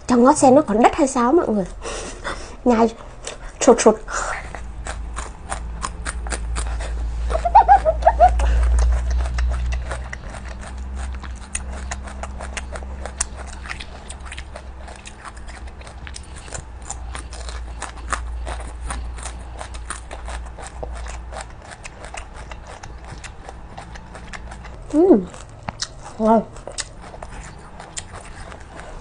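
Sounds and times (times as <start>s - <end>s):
chewing crunchy food: 4.2s - 29.0s
wet mouth clicks: 4.5s - 6.8s, 7.4s - 29.0s.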